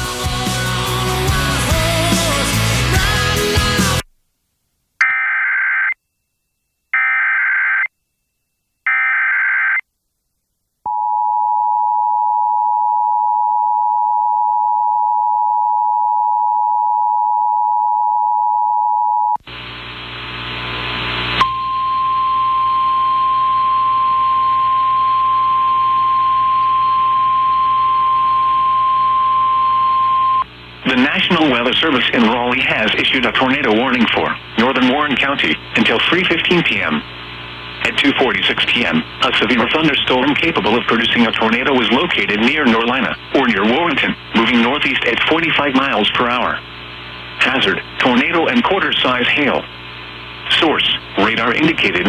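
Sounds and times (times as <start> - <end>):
hissy weather radio relay: 30.8 - 49.8, 50.4 - 52.0.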